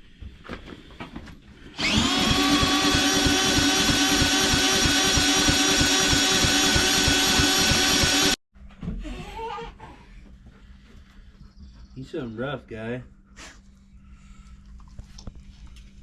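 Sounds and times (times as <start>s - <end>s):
lawn mower engine running: 1.8s - 8.4s.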